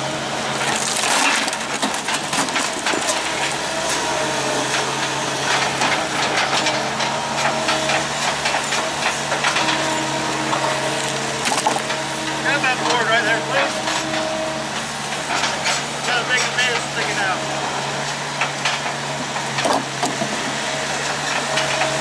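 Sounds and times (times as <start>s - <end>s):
heavy equipment engine running: 0.0s - 22.0s
wood cracking and splintering: 0.5s - 4.1s, 10.5s - 16.8s, 18.4s - 21.9s.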